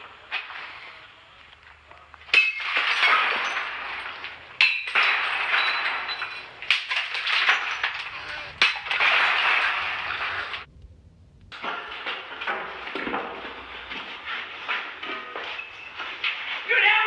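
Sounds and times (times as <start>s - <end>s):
glass being smashed: 2.3s - 10.7s
tinkling glass shards: 2.4s - 8.4s.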